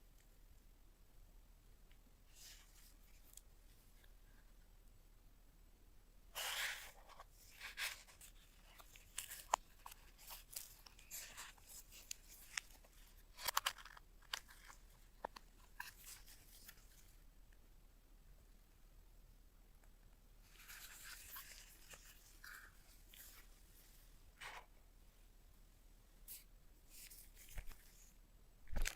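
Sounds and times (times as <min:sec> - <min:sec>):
packaging rustling and crinkling: 0:07.4 - 0:17.1.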